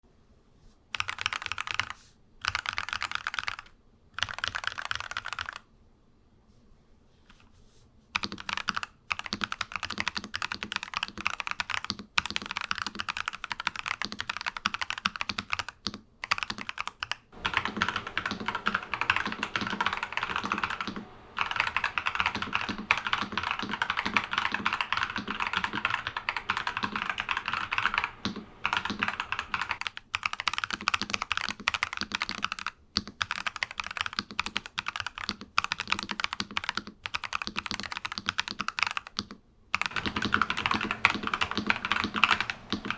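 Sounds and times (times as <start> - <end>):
mechanical keyboard typing: 0.9 - 5.7, 8.2 - 42.9.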